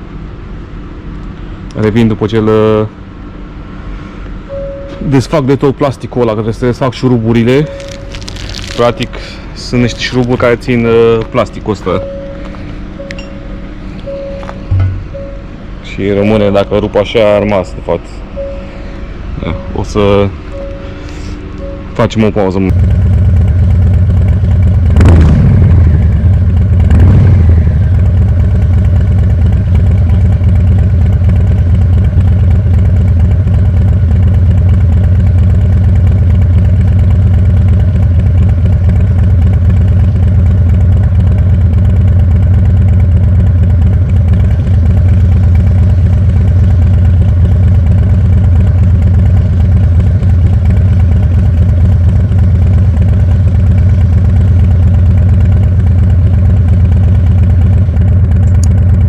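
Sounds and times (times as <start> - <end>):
motorcycle engine idling: 6.5 - 59.0
motorcycle throttle blip: 12.3 - 13.4, 14.0 - 15.4, 58.4 - 58.8.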